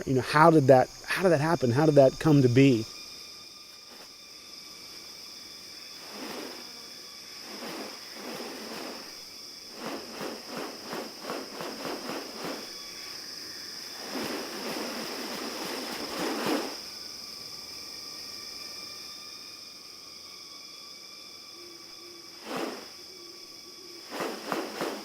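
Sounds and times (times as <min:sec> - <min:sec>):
soft noisy bursts: 0:00.0 - 0:17.5
high insect drone: 0:00.0 - 0:25.0.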